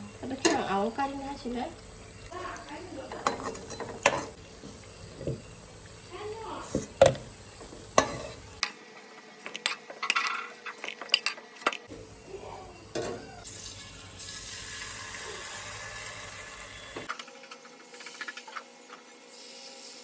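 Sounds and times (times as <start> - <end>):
steady hiss: 0.0 - 8.6, 11.9 - 17.1
metal utensils scraping a pot: 0.2 - 1.5, 2.9 - 5.5, 6.6 - 8.7.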